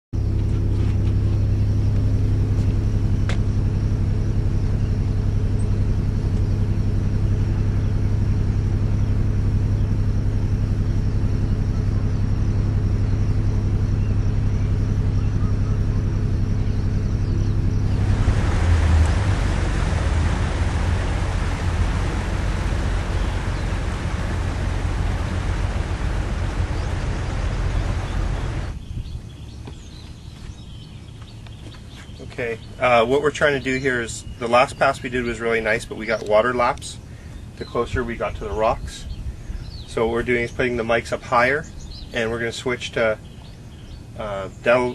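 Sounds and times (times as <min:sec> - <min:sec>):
boat engine droning: 0:00.2 - 0:44.9
broad rushing noise: 0:16.9 - 0:29.3.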